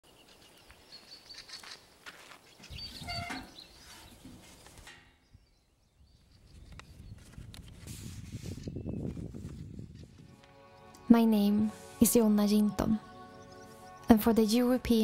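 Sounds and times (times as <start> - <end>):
birds chirping: 0.0 - 7.4, 8.7 - 15.0
loud animal call: 2.9 - 3.6.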